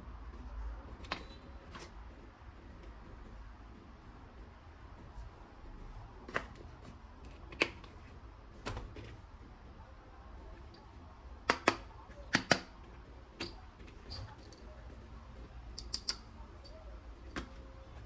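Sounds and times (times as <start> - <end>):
toy gun clicks and knocks: 15.7 - 16.2.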